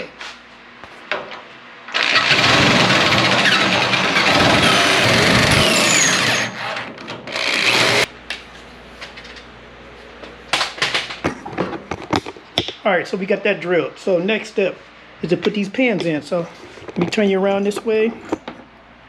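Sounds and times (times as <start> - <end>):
power drill cutting hole: 1.9 - 8.1.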